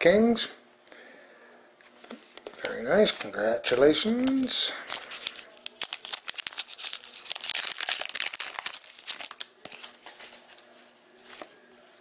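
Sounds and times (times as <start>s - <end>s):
foil wrapper crinkling and tearing: 4.2s - 10.4s.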